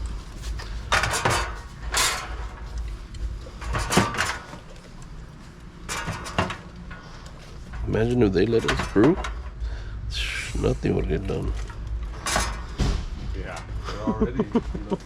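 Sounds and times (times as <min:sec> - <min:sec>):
products rustling and clattering: 0:00.0 - 0:09.6.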